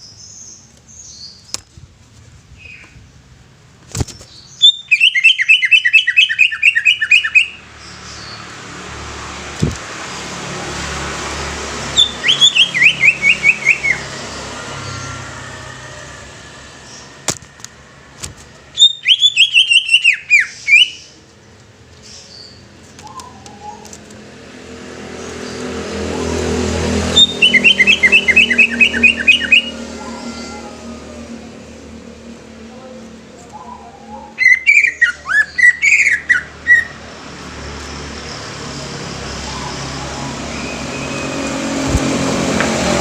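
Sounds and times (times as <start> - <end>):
bird whistling falling notes: 27.2 - 30.6.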